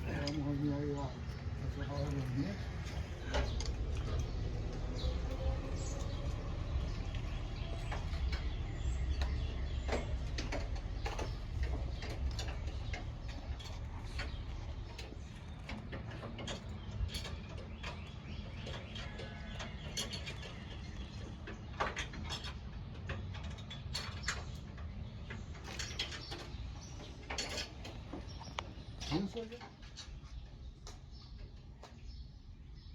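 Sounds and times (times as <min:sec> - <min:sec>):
low steady rumble: 0:00.0 - 0:21.7
sharp clicks and knocks: 0:01.2 - 0:30.2.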